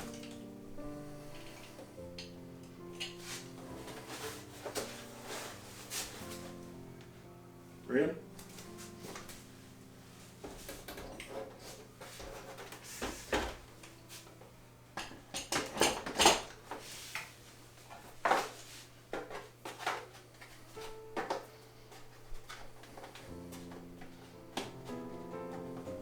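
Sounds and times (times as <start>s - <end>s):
monitor and cables clattering: 10.5s - 13.7s.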